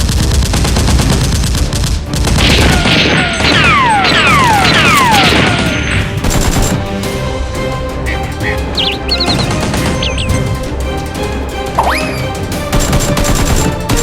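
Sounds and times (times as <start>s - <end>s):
rapid gunfire: 0.0s - 7.2s, 8.8s - 10.6s, 12.5s - 14.0s
background music: 0.0s - 14.0s
falling whistles: 8.7s - 10.4s.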